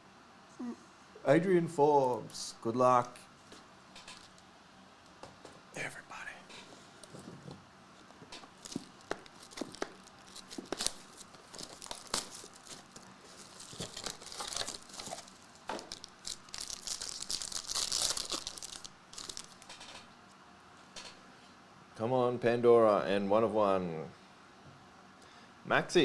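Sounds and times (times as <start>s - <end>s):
packaging tearing and crinkling: 8.4s - 20.1s.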